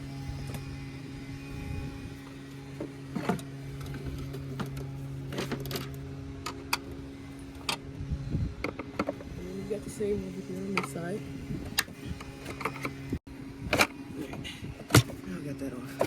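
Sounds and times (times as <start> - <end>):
low mechanical hum: 0.0 - 16.0.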